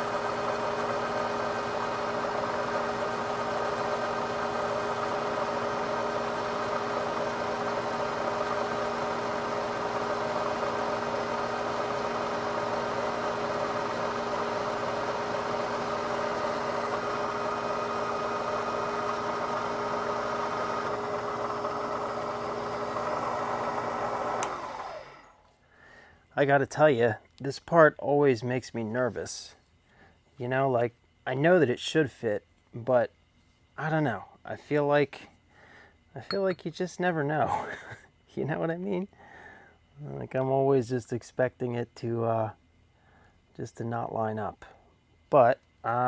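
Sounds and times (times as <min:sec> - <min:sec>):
metal lathe motor whine: 0:00.0 - 0:25.4.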